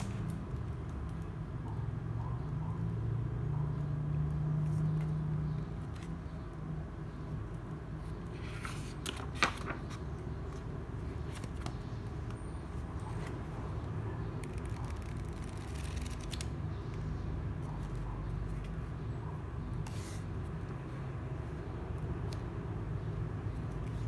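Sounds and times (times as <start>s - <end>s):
notebook and packaging handled: 8.1s - 17.0s.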